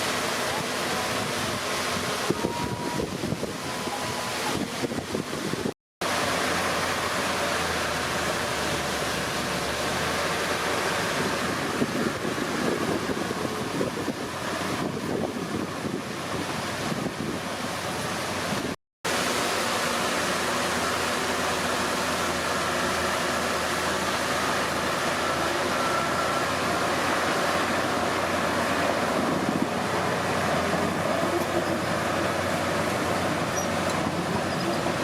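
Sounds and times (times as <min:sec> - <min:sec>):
bulldozer engine running: 0:00.0 - 0:35.0.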